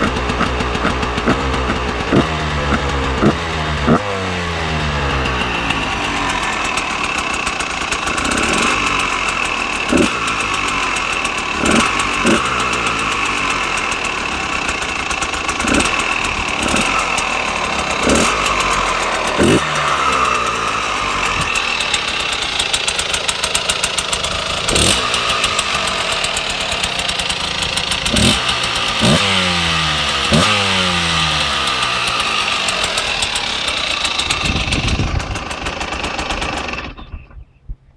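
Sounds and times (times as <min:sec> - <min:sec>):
engine throttle blips: 0:00.0 - 0:37.6
motorcycle engine idling: 0:00.0 - 0:37.9.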